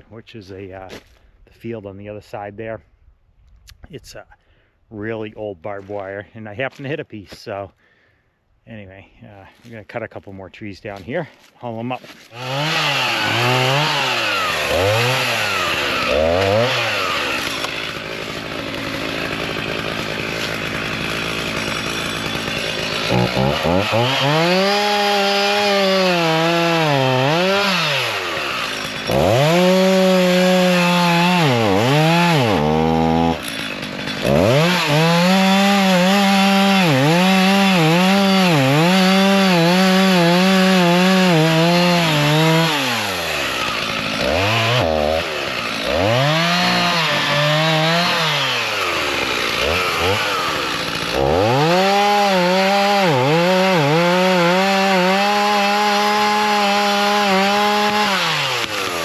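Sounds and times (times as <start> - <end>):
chainsaw cutting wood: 12.0 - 59.0.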